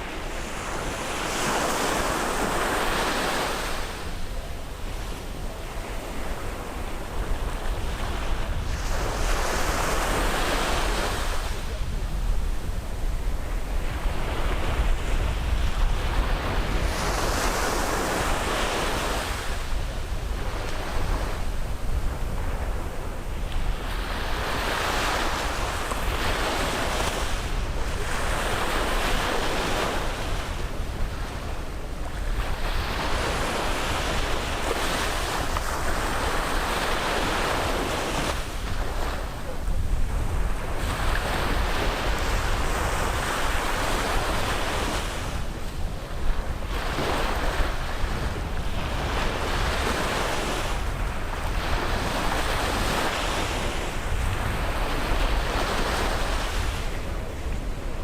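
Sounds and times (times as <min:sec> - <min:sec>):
sea waves breaking on beach: 0:00.0 - 0:58.0
wind buffeting microphone: 0:03.3 - 0:58.0.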